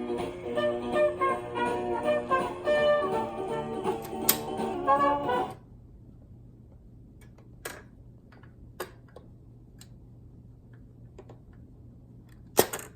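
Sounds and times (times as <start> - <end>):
low steady hum: 0.0 - 12.9.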